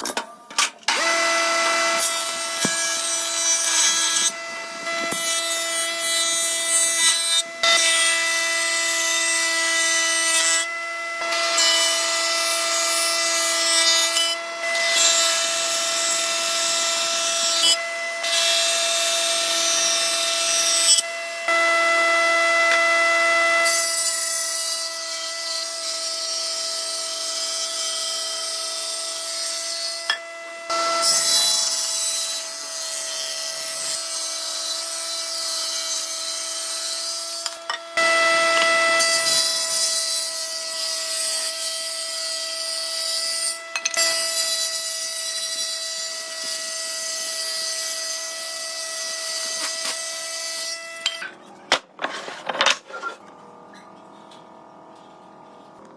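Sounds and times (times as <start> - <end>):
power tool motor whine: 0.0 - 52.1
tool rasping into wood: 0.9 - 8.2.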